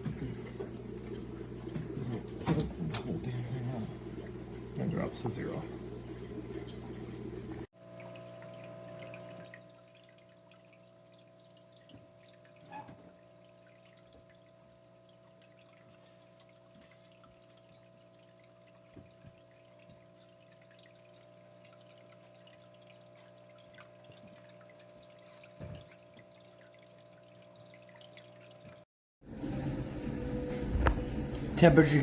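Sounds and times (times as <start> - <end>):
electrical hum: 0.0 - 16.7, 29.2 - 32.0
water trickling and dripping: 0.0 - 28.8.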